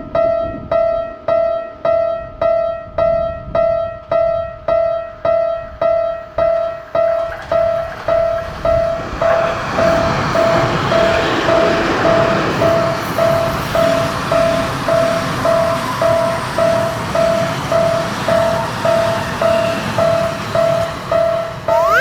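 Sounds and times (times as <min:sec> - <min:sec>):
approaching train rushing: 0:06.6 - 0:22.0
level crossing bell ringing: 0:21.7 - 0:22.0.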